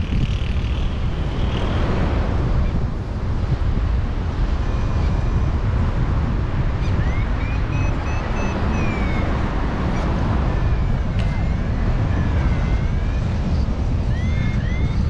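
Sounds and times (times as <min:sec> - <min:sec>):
wind buffeting microphone: 0:00.0 - 0:15.0
faint high whistling tone: 0:04.6 - 0:05.6, 0:06.8 - 0:15.0.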